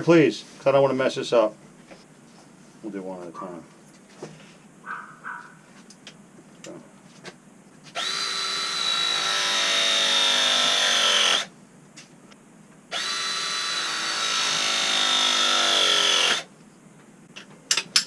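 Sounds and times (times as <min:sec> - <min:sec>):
pipe pressing tool motor: 0:08.0 - 0:11.5, 0:12.9 - 0:16.5.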